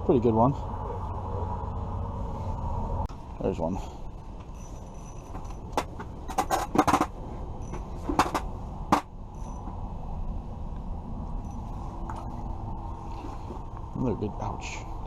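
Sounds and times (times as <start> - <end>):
strong wind rumbling on shelter: 0.0 - 15.0
sharp clicks and knocks: 5.2 - 9.8.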